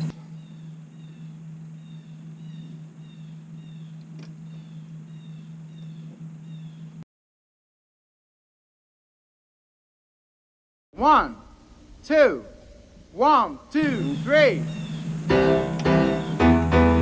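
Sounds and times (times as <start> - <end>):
bird chirping: 0.0 - 7.0, 11.5 - 17.0
steady low hum: 0.0 - 7.0, 11.0 - 17.0.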